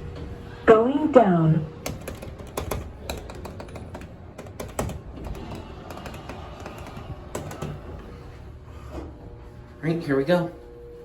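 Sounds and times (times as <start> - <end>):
elevator hum: 0.0 - 11.0
elevator car clicks and knocks: 1.8 - 8.0.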